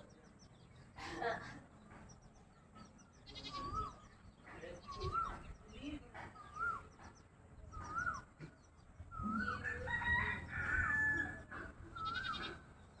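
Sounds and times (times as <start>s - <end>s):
chickens calling: 9.1s - 13.0s.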